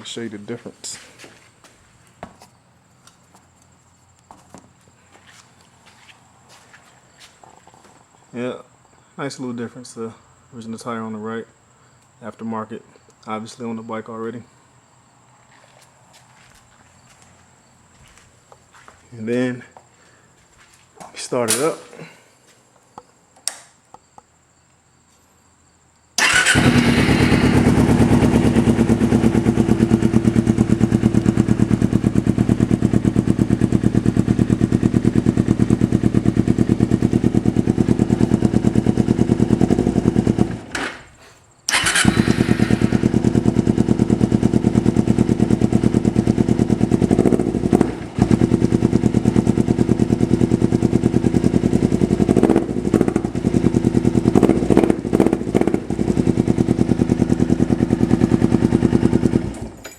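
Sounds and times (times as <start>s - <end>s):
motorcycle engine idling: 26.2s - 40.7s, 41.7s - 59.9s
motorcycle engine starting: 26.2s - 41.1s, 41.7s - 59.9s.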